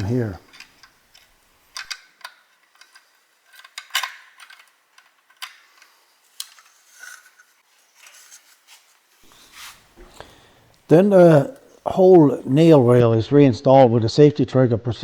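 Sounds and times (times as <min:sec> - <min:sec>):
small metal parts clicking: 0:00.4 - 0:08.3.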